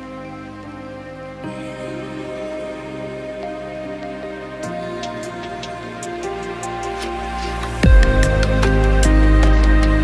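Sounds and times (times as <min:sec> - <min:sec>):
synth chords: 0:00.0 - 0:10.0
deep bass: 0:07.2 - 0:10.0.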